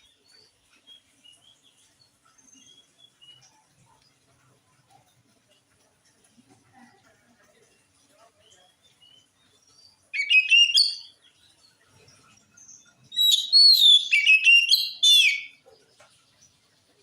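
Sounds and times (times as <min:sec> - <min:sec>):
bird singing whistled notes: 0:10.2 - 0:11.2, 0:12.6 - 0:15.6.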